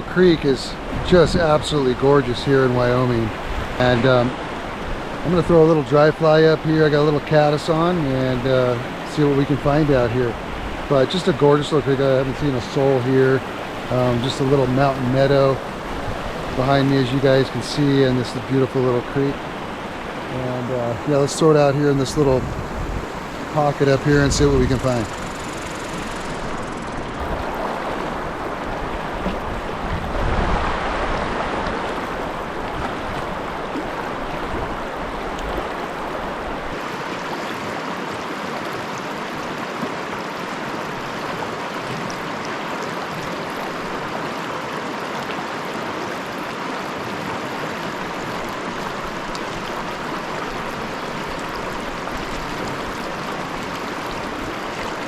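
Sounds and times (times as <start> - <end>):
creek water flowing: 0.0 - 55.0.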